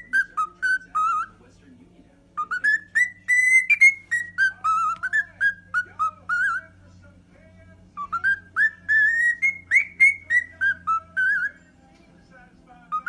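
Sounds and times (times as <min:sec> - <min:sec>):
parrot whistling a tune: 0:00.0 - 0:01.4, 0:02.4 - 0:06.7, 0:08.0 - 0:11.7.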